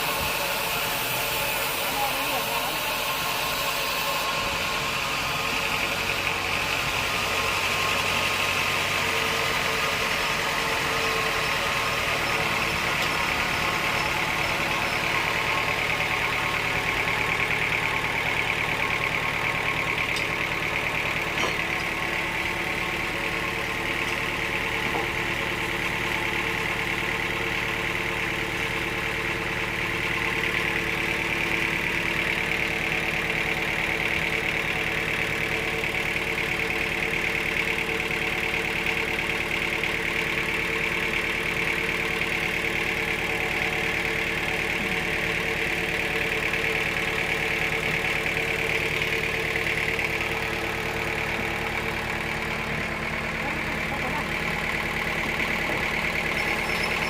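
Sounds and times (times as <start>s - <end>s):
saw cutting log: 0.0s - 17.4s.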